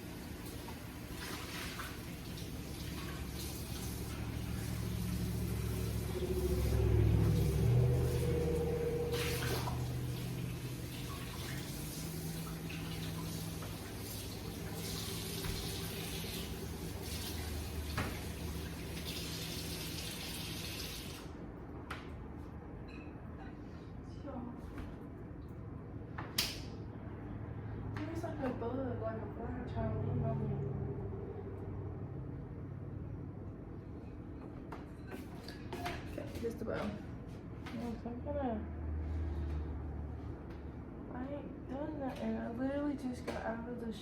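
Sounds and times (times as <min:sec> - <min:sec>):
muffin pan being washed: 0:00.0 - 0:21.3
tap water running into sink: 0:00.1 - 0:06.5, 0:09.0 - 0:21.3.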